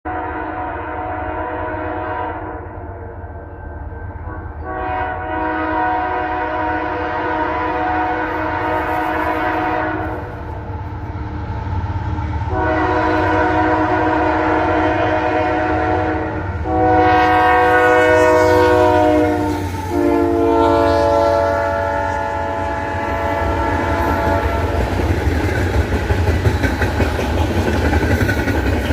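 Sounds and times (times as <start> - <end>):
locomotive air horn blasts: 0.0 - 2.8, 4.3 - 10.5, 12.5 - 24.9.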